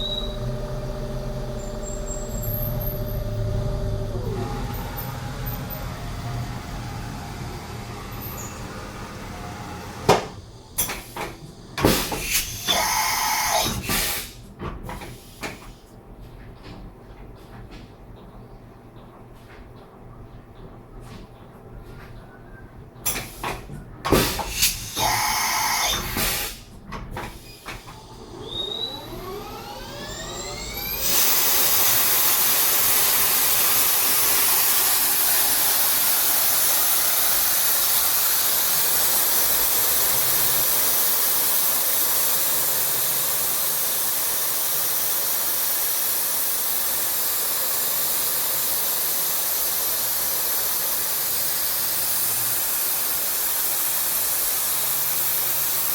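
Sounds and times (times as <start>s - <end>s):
spindle whine: 0.0s - 10.8s, 27.9s - 40.8s
loud machine hiss: 0.0s - 14.4s, 24.1s - 26.7s, 27.4s - 55.9s
machine clunks and knocks: 10.0s - 12.3s, 14.6s - 15.7s, 26.1s - 28.0s.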